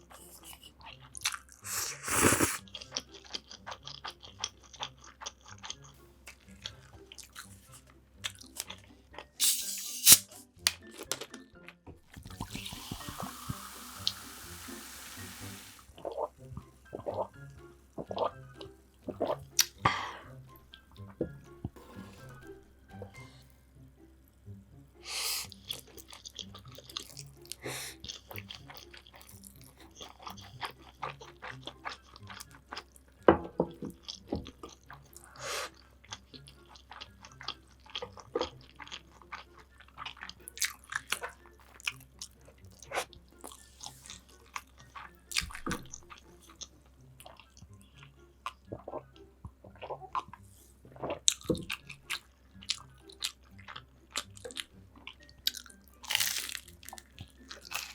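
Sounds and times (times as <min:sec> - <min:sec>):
chewing and biting food: 0:00.0 - 0:11.5, 0:18.0 - 0:20.1, 0:25.5 - 0:33.2, 0:33.9 - 0:57.9.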